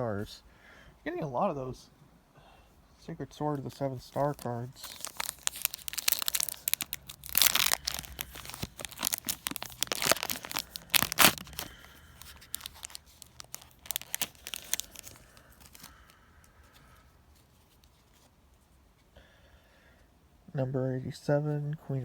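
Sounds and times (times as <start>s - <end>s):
wrapper crinkling: 3.7s - 18.3s
foil pack tearing: 4.2s - 16.0s.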